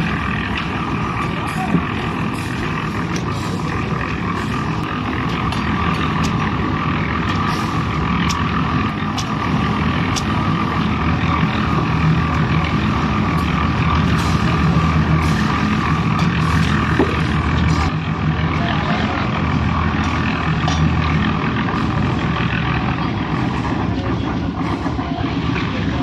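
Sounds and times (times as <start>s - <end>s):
machinery engine running: 0.0s - 26.0s
sharp clicks and knocks: 8.2s - 10.5s.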